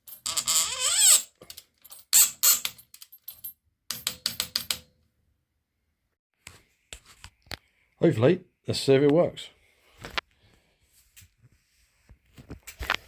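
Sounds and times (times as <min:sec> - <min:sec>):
wrench scraping with squeak: 0:00.2 - 0:01.4.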